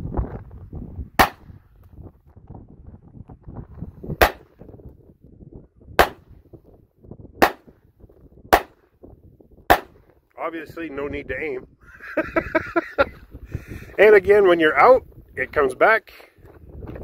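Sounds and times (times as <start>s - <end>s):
blank pistol shots: 1.2s - 1.5s, 4.2s - 4.6s, 6.0s - 6.3s, 7.4s - 7.7s, 8.5s - 8.8s, 9.7s - 10.1s.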